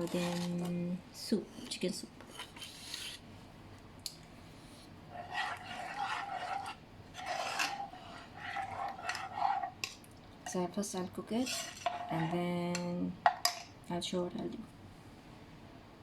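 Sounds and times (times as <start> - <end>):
utensil scraping cookware: 0.0 - 0.8, 5.1 - 10.0, 11.3 - 13.6.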